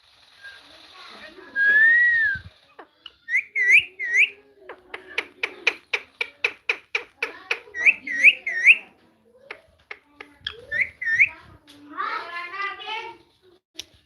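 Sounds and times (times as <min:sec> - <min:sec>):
parrot clicking calls: 0:02.8 - 0:08.8, 0:09.5 - 0:11.3.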